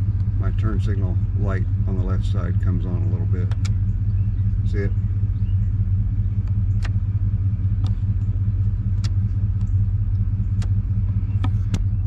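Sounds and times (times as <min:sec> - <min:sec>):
motorcycle engine idling: 0:00.0 - 0:12.0
turn-signal flasher clicks: 0:03.4 - 0:03.8, 0:06.4 - 0:07.0, 0:09.0 - 0:09.8.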